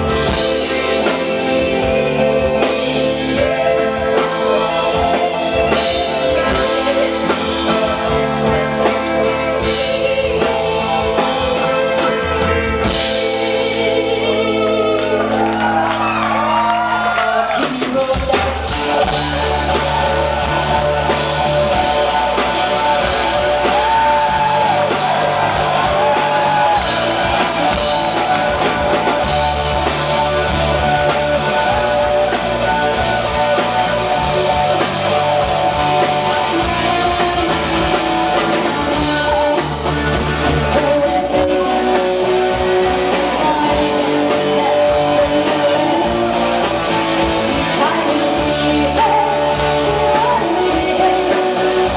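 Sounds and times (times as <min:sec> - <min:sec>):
live rock band playing: 0:00.0 - 0:51.9
person singing: 0:00.0 - 0:51.9.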